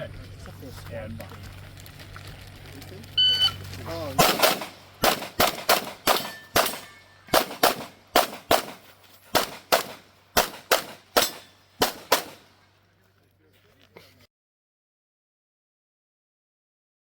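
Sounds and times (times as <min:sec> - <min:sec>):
pistol shots: 0:04.1 - 0:12.6.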